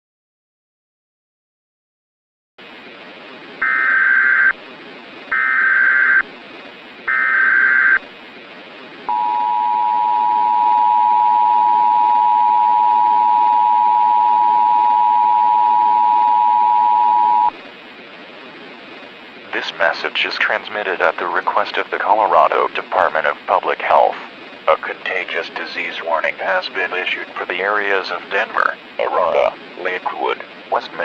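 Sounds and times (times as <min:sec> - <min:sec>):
data tone bursts: 0:03.6 - 0:04.6, 0:05.3 - 0:06.2, 0:07.1 - 0:08.0, 0:09.1 - 0:17.6
two-tone alert signal: 0:09.1 - 0:17.5.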